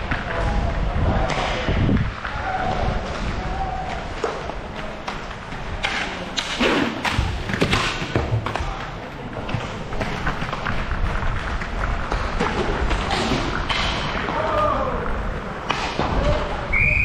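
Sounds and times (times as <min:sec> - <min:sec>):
hollow rink ambience: 0:00.0 - 0:17.0
hockey sticks and puck knocking: 0:01.2 - 0:14.8, 0:15.6 - 0:16.6.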